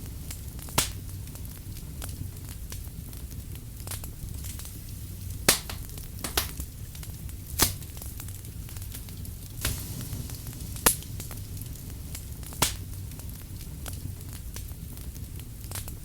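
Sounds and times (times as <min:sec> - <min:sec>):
firewood burning with crackles: 0:00.0 - 0:16.0.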